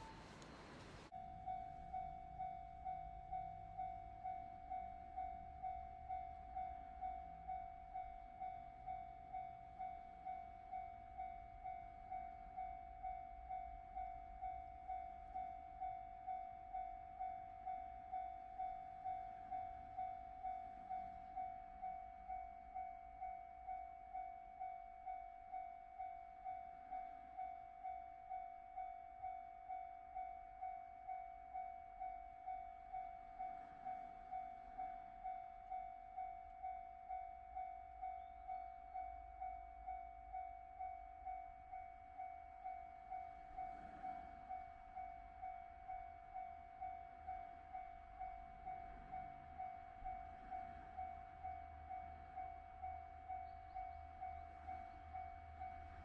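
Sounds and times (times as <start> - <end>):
level crossing alarm ringing: 0.0 - 24.9.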